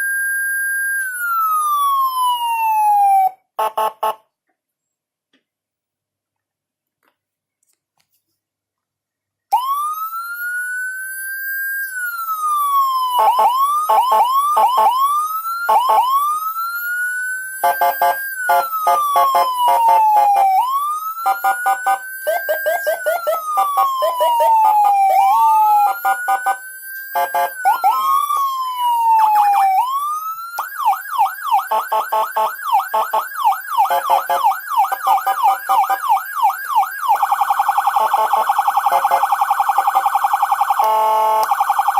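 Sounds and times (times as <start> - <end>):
electronic siren wailing: 9.5 - 41.9
siren fast yelp: 9.5 - 41.9.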